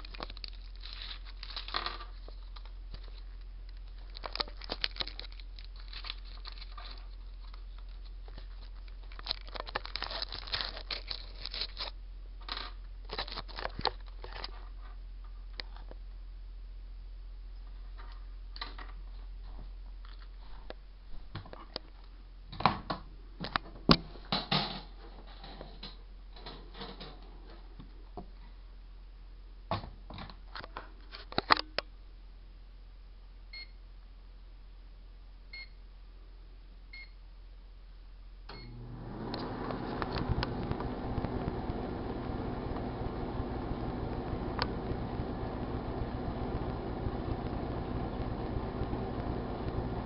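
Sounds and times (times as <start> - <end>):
microwave oven humming: 38.5 - 50.0.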